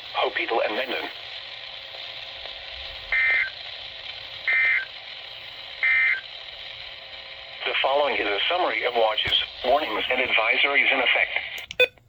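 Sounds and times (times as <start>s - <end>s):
radio hiss: 0.0s - 11.7s
buzzy digital data bursts: 2.3s - 6.3s.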